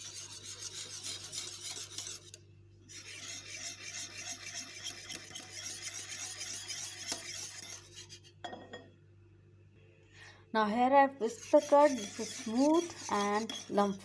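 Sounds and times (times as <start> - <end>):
whisk scraping a bowl: 0.0 - 8.3, 11.2 - 14.0.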